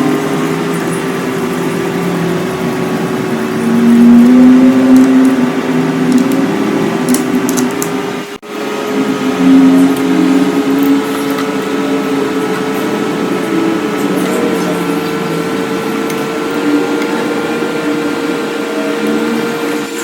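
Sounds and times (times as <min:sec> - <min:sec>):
espresso machine pump humming: 0:00.0 - 0:20.0.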